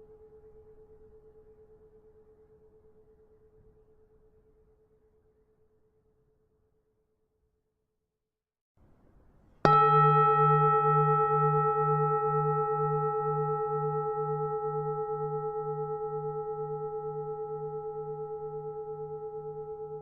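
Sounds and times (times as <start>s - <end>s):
temple bell ringing: 9.7s - 20.0s.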